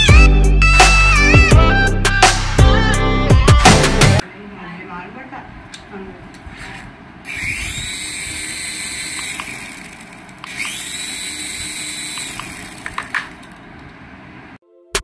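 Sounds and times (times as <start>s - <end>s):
small electric motor whirring: 7.2s - 13.6s.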